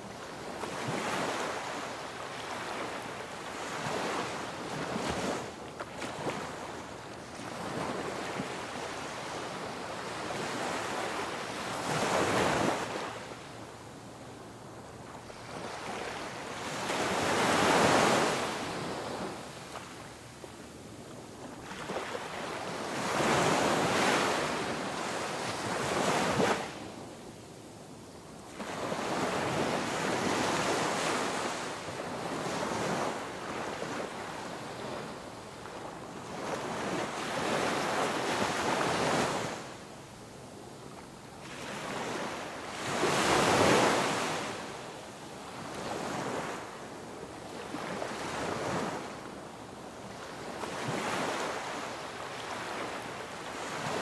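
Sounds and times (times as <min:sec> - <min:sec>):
ocean waves breaking on shore: 0:15.1 - 0:20.2, 0:41.4 - 0:54.0.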